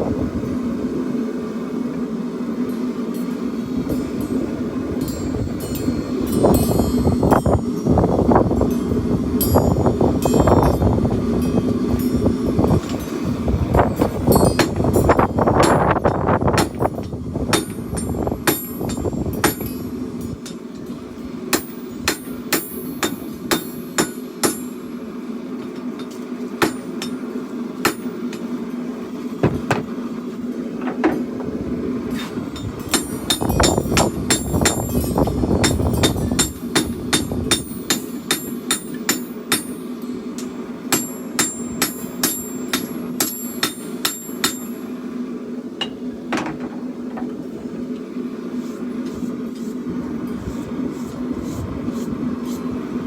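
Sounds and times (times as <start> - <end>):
steady low hum: 0.0 - 53.0
hammer striking steel on anvil: 2.7 - 7.9, 9.4 - 10.8, 14.0 - 20.6, 21.5 - 24.8, 26.0 - 27.2, 27.8 - 28.5, 32.2 - 44.8.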